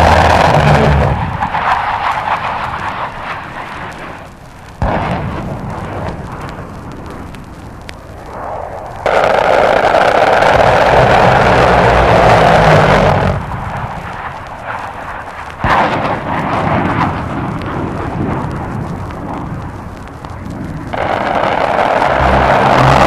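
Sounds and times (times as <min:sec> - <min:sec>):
explosion blast: 0:00.0 - 0:01.9, 0:04.8 - 0:07.0, 0:09.0 - 0:14.3, 0:15.6 - 0:19.6, 0:20.5 - 0:23.0
jet aircraft roar: 0:00.0 - 0:07.2, 0:08.2 - 0:23.0
record surface crackle: 0:00.0 - 0:23.0.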